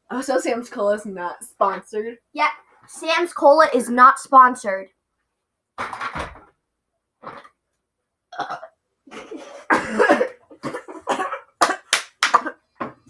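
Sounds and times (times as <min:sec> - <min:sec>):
girl burping: 0:08.3 - 0:11.4
short coughs: 0:08.4 - 0:12.6.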